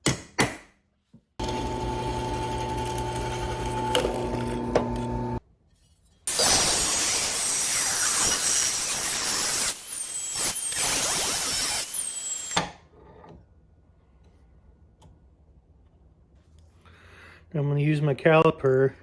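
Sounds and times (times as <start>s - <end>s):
power drill boring through steel: 1.4s - 5.4s, 6.3s - 12.6s.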